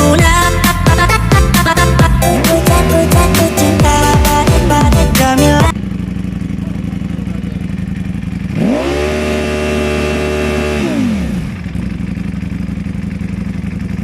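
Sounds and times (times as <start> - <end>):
motorcycle engine idling and revving: 0.0 - 14.0.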